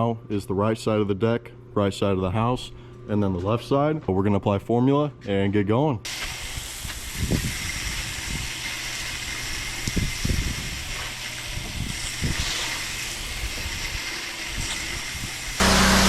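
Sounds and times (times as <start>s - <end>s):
low machine hum: 0.0s - 5.3s, 15.2s - 16.0s
pressure washer spray hissing: 6.1s - 16.0s.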